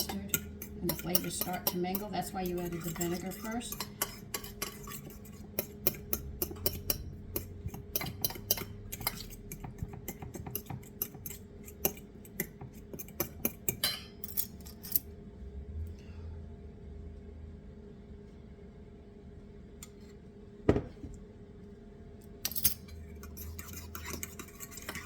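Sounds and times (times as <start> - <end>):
utensil tapping against bowl: 0.0 - 13.9
faint steady hum: 0.0 - 25.0.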